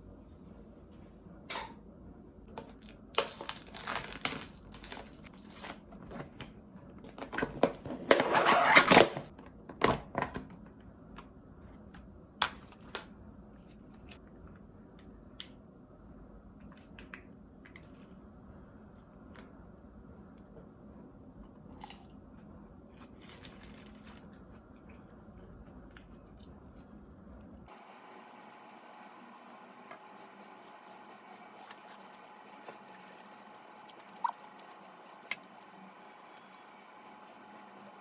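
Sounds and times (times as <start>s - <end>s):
crinkling and rustling: 2.5s - 10.5s, 23.0s - 24.4s.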